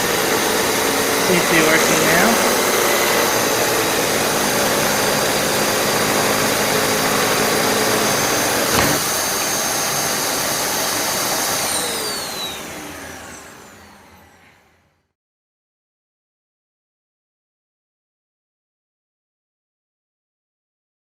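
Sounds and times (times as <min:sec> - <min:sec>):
upright vacuum running: 0:00.0 - 0:14.8
vacuum motor spinning down: 0:00.0 - 0:15.0
knock: 0:08.7 - 0:09.0.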